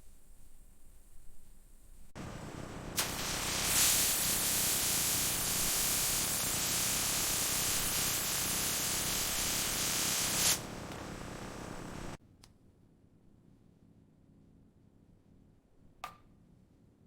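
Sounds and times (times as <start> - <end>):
steady hiss: 0.0 - 12.2.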